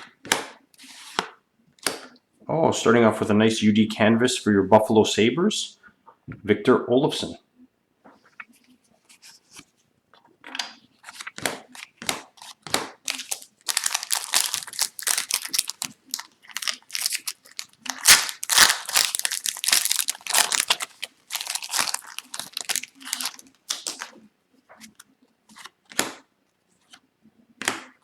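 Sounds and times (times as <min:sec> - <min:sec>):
foil wrapper crinkling and tearing: 0:13.0 - 0:24.2.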